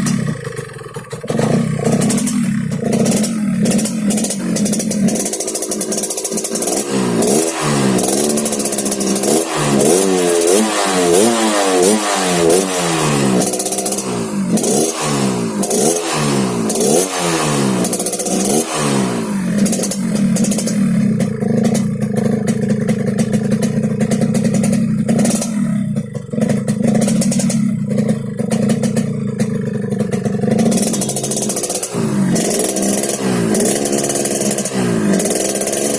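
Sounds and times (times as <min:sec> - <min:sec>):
two-stroke motorcycle engine revving: 0:00.0 - 0:35.9.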